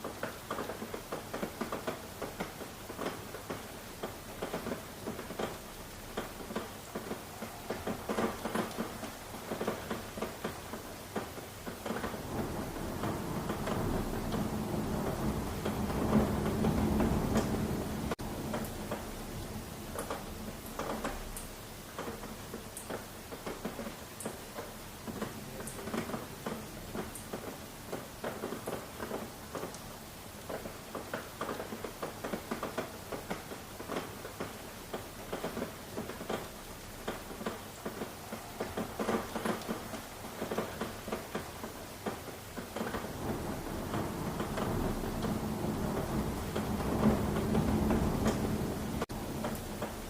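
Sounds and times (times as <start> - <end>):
rain pattering: 0.0 - 50.0.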